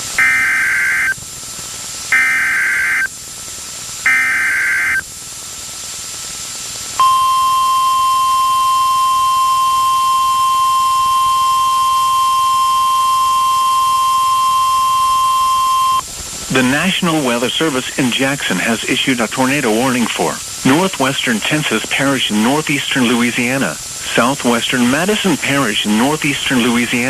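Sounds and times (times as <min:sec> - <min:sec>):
steady warning alarm tone: 0:00.1 - 0:01.2, 0:02.1 - 0:03.1, 0:04.1 - 0:05.1, 0:07.0 - 0:27.0
buzzy digital data bursts: 0:00.2 - 0:01.2, 0:02.1 - 0:03.1, 0:04.1 - 0:05.0, 0:07.0 - 0:27.0.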